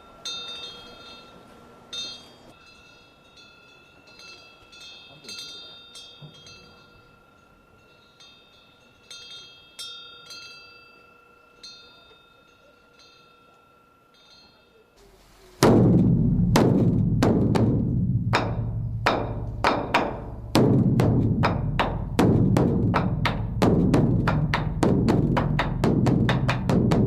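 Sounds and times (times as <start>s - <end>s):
wind bell clinking: 0.0s - 15.0s
large drum beaten: 15.6s - 27.0s.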